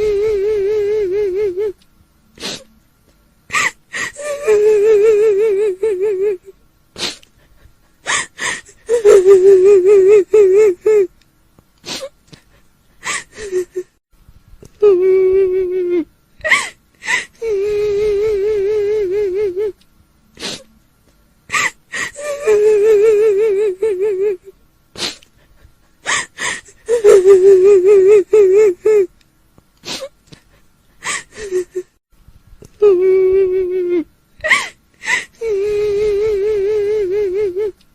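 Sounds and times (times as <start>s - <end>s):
woman sobbing: 0.0s - 1.8s, 3.5s - 11.1s, 11.9s - 14.0s, 14.8s - 19.8s, 21.5s - 29.1s, 29.9s - 32.0s, 32.8s - 37.8s
woman wailing: 3.5s - 6.5s, 8.1s - 11.1s, 21.5s - 24.4s, 26.1s - 29.1s.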